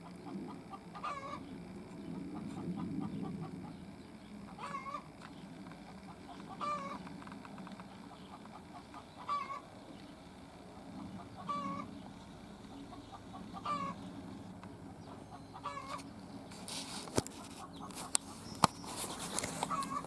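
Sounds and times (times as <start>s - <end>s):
goose honking: 0.5s - 1.4s, 4.5s - 5.1s, 6.1s - 7.1s, 8.4s - 9.7s, 11.0s - 11.9s, 12.9s - 14.1s, 15.1s - 16.0s, 19.6s - 20.0s
sharp click: 18.0s - 19.9s.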